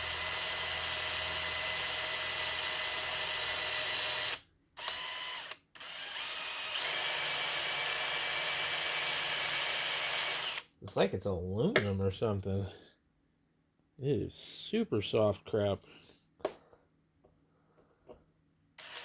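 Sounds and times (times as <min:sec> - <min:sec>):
electric drill drilling metal: 0:00.0 - 0:10.7, 0:18.8 - 0:19.0.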